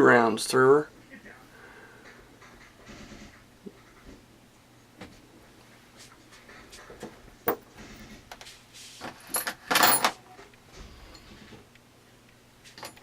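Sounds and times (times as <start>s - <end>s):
metal parts clicking and clinking: 9.0s - 10.2s, 12.7s - 13.0s.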